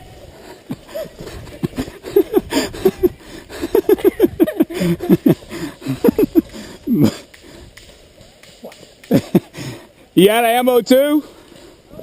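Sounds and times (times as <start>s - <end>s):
person laughing: 0.7s - 7.2s, 9.1s - 9.6s.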